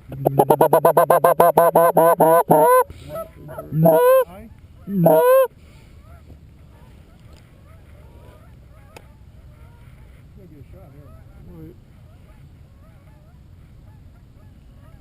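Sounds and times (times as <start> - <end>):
goose call clucks and honks: 0.0 - 5.5, 12.0 - 15.0
faint goose calls: 0.0 - 10.2, 10.9 - 15.0.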